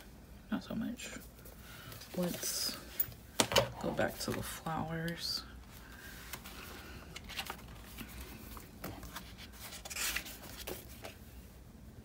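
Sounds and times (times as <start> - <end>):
paper scraping: 7.3 - 11.1.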